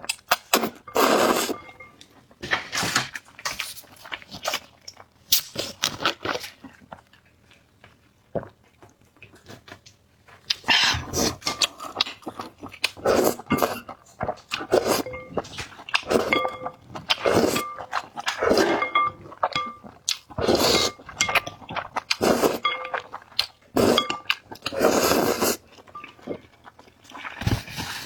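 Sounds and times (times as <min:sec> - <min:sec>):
slurping and chewing noodles: 0:00.0 - 0:02.8, 0:03.5 - 0:28.0
utensils clinking against bowl: 0:00.6 - 0:02.1, 0:10.9 - 0:12.0, 0:13.0 - 0:14.0, 0:14.6 - 0:23.2, 0:23.8 - 0:26.3.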